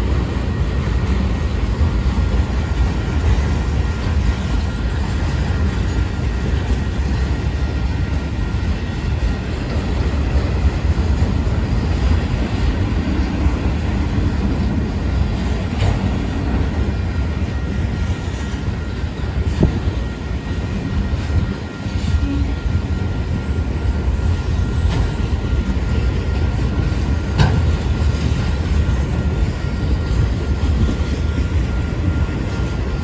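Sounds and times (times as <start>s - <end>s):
train wheels rumbling on rail: 0.0s - 33.0s.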